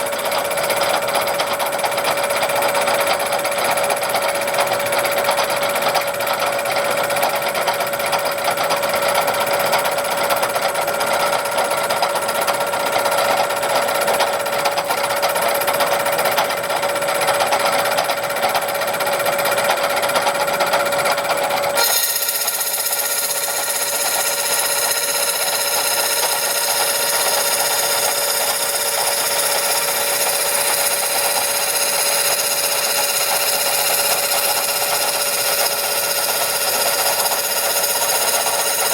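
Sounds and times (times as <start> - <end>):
small machine whining: 20.8 - 38.9.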